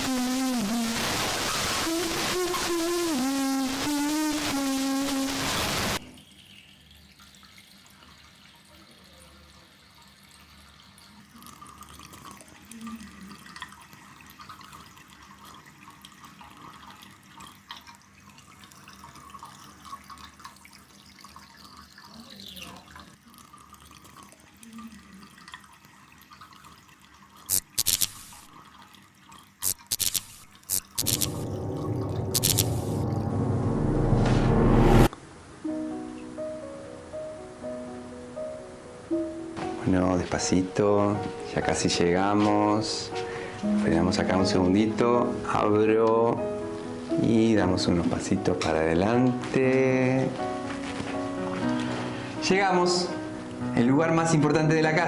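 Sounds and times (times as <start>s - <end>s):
water running into a sink: 4.0s - 33.1s.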